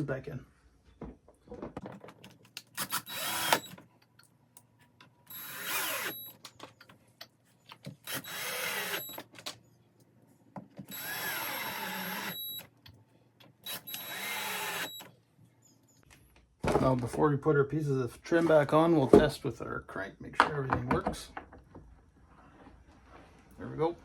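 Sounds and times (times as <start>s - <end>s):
power drill driving screws: 2.7s - 3.8s, 5.3s - 6.4s, 7.9s - 9.3s, 10.8s - 12.7s, 13.6s - 15.1s.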